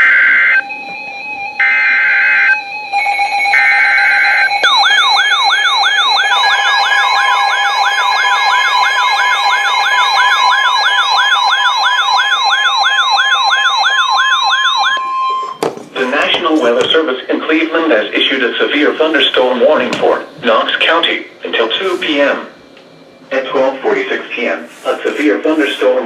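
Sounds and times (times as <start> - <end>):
screeching digital header tones: 0.0 - 15.6
warbling siren alarm: 0.0 - 15.6
steady alert tone: 0.0 - 16.4.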